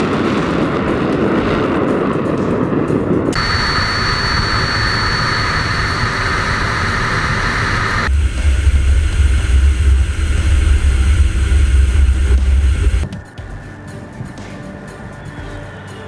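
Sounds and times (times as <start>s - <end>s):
jet engine rushing: 3.3s - 13.0s
high steady whine: 3.4s - 13.1s.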